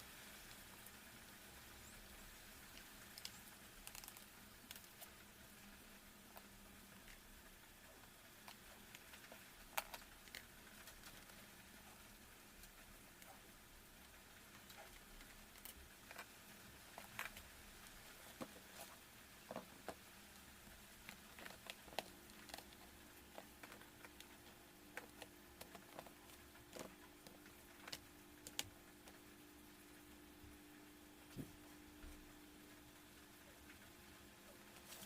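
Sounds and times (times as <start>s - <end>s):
faint steady hum: 0.0s - 35.0s.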